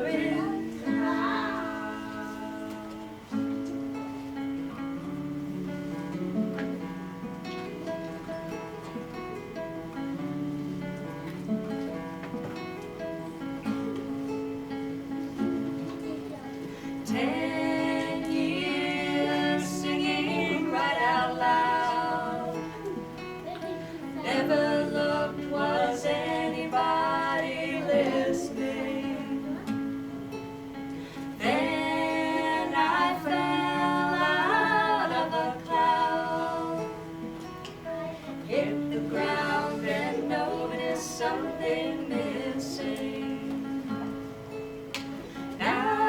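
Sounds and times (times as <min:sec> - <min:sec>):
acoustic guitar: 0:00.0 - 0:46.0
person singing: 0:45.6 - 0:46.0.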